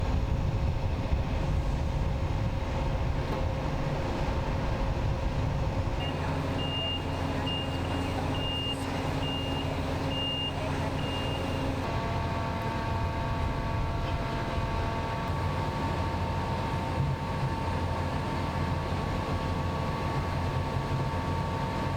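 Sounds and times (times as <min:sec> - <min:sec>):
heavy vehicle engine running: 0:00.0 - 0:21.9
reversing alarm beeping: 0:06.0 - 0:11.9.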